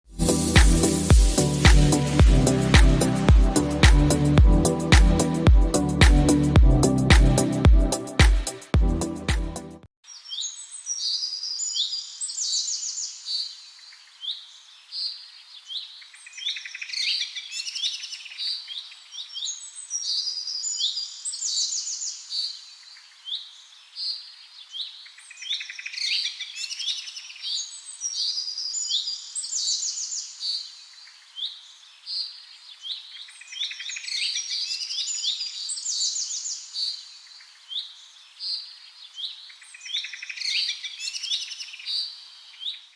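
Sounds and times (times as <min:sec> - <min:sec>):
songbirds chirping and trilling: 0:10.1 - 0:42.9.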